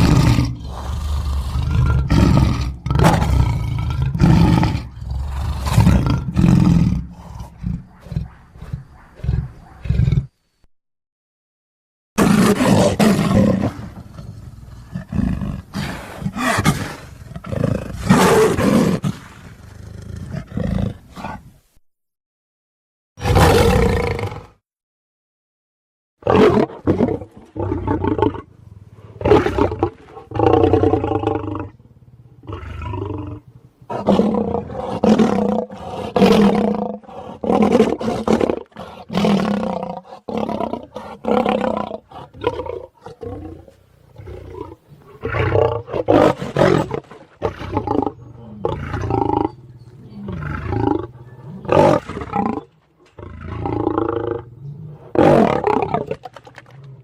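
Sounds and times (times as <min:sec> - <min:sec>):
lion roars and snarls: 0:00.0 - 0:10.4, 0:12.2 - 0:21.5, 0:23.2 - 0:24.6, 0:26.2 - 0:57.0.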